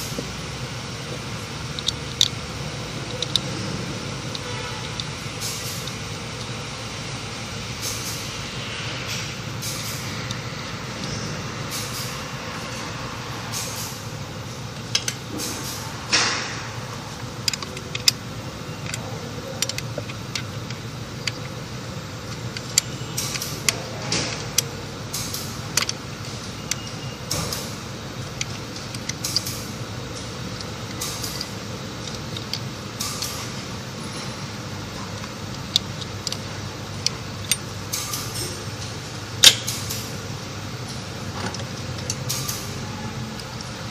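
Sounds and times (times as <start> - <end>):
steady low hum: 0.0 - 43.9
hand tools clicking and knocking: 17.4 - 18.2, 18.8 - 21.6, 22.2 - 27.6, 28.3 - 33.5, 35.0 - 38.6.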